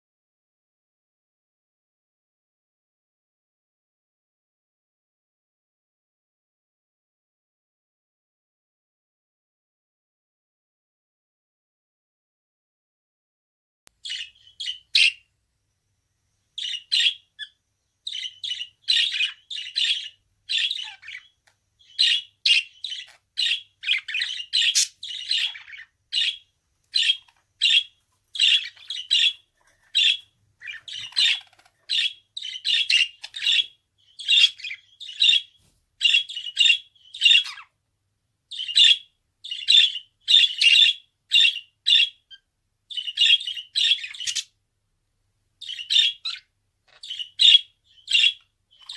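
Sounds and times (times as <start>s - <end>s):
budgerigar chirping: 14.0s - 15.2s, 16.6s - 37.8s, 38.5s - 44.6s, 45.6s - 48.9s.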